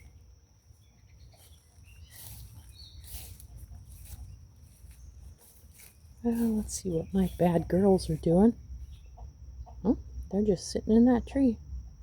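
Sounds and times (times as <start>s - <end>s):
faint chirps: 0.0s - 7.9s
high insect trill: 0.0s - 12.0s.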